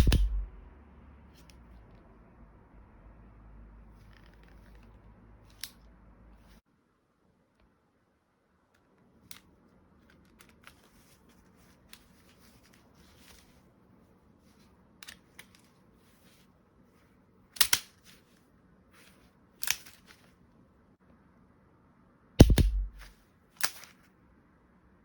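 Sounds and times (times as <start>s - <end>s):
small handling clicks: 4.0s - 5.9s, 8.8s - 11.2s, 15.0s - 15.8s, 17.6s - 18.2s, 19.0s - 20.3s, 22.4s - 24.1s.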